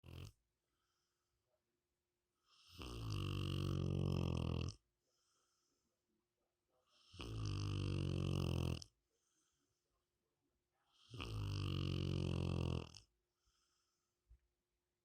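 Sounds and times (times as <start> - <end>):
dog snoring: 0.0 - 0.4, 2.4 - 4.9, 6.8 - 9.4, 10.9 - 13.8
faint dog breathing: 5.0 - 6.1, 9.0 - 10.1, 13.3 - 14.4.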